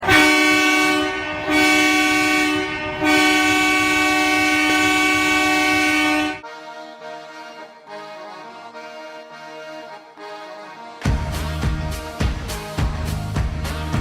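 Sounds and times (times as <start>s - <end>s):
hockey goal horn blasts: 0.0s - 6.6s.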